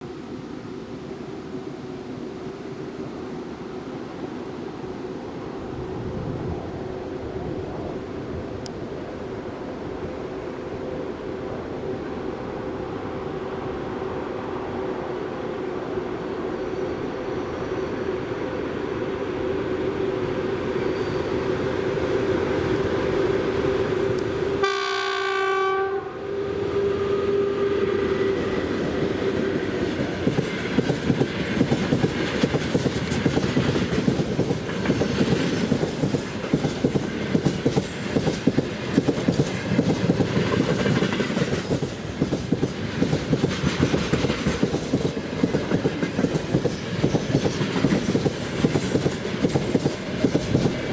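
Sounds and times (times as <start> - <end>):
electric locomotive humming: 0.0 - 50.9
train horn blast: 24.6 - 29.6
wheels clacking over rail joints: 29.4 - 50.9.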